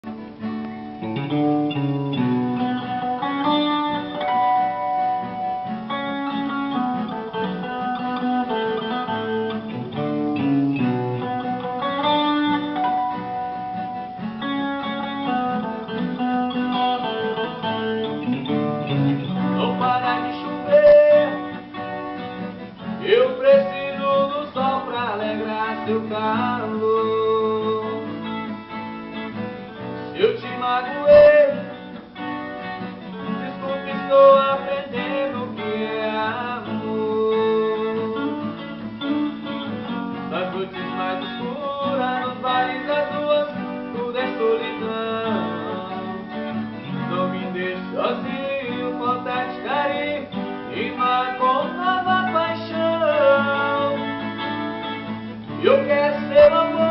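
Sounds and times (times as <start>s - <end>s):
plucked acoustic guitar: 0.0s - 56.9s.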